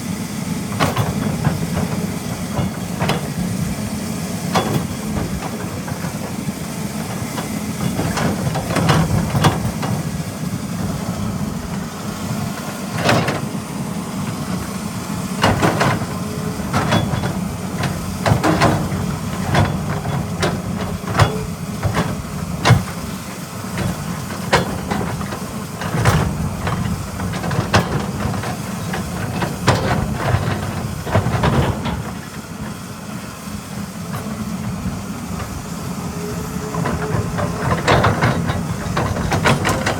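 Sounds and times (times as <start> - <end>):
excavator diesel engine running: 0.0 - 39.9
metallic clanks and knocks: 4.5 - 6.4, 36.7 - 39.9.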